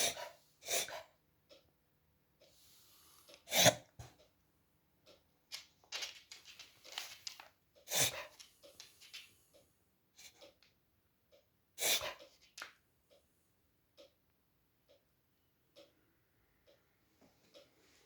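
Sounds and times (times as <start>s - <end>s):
dog reverse sneezing: 0.0s - 1.1s, 3.5s - 4.1s, 7.9s - 8.4s, 11.8s - 12.2s.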